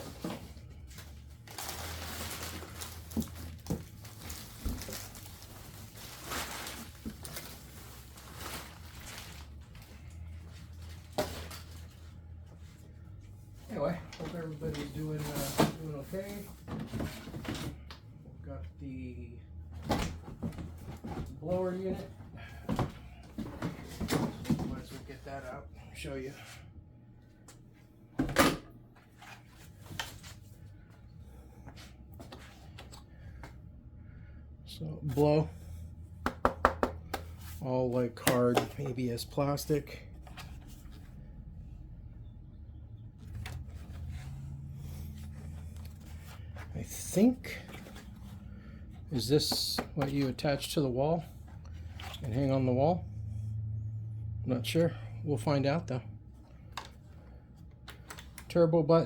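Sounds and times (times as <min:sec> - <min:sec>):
packaging rustling: 0:01.2 - 0:09.8.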